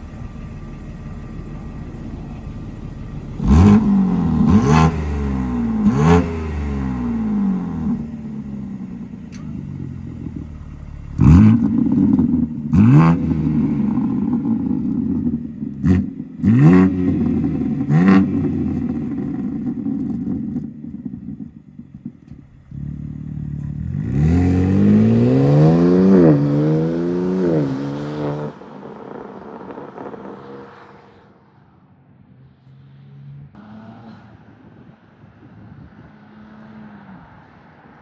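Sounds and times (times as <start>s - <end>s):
car engine idling: 0.0s - 28.0s
car exhaust revving: 0.0s - 31.1s.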